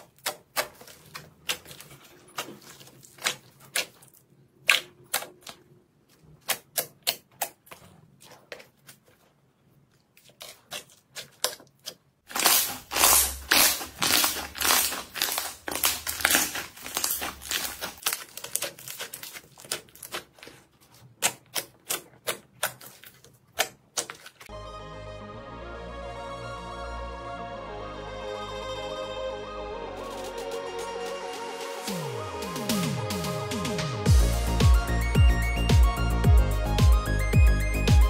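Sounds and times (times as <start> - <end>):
slime clicking and popping: 10.4 - 24.4.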